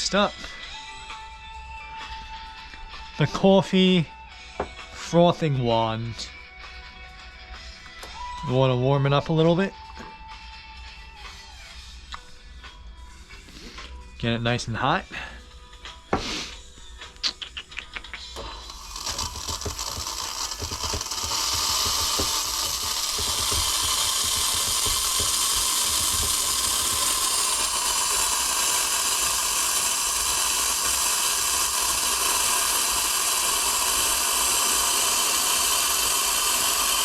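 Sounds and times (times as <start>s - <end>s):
steam wand hissing and sputtering: 16.1s - 16.7s, 18.1s - 37.0s.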